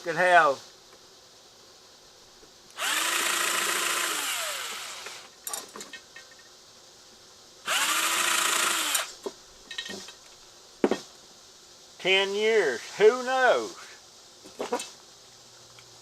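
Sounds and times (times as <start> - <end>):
cordless screw gun spinning: 2.8 - 5.3, 7.7 - 9.1.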